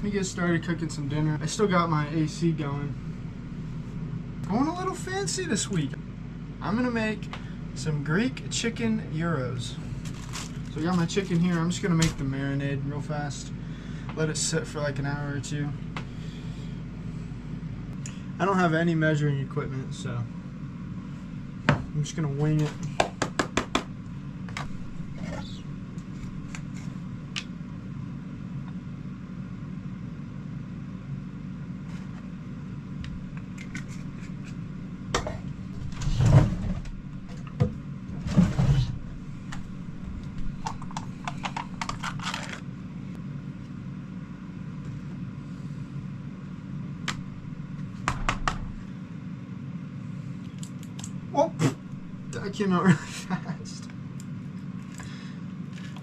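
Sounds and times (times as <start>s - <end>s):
electric fan humming: 0.0s - 56.0s.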